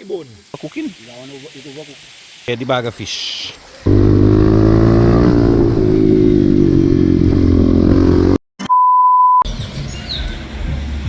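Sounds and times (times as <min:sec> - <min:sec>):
outdoor background noise: 0:00.0 - 0:08.3, 0:09.4 - 0:11.0
engine running: 0:03.9 - 0:08.4
high beep: 0:08.6 - 0:09.4.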